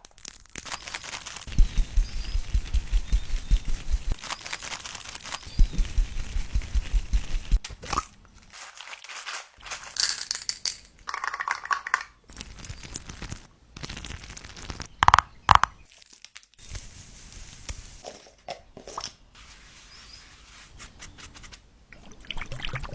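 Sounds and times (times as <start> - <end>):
makeup items crinkling and rustling: 0.3 - 7.5, 8.3 - 12.0, 15.8 - 19.2.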